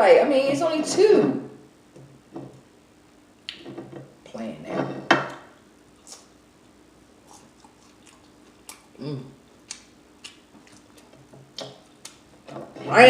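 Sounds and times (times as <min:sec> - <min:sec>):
lip smacks and clicks: 0:03.4 - 0:03.6, 0:09.6 - 0:12.3
person chewing food: 0:05.9 - 0:12.5
person humming: 0:09.0 - 0:09.4.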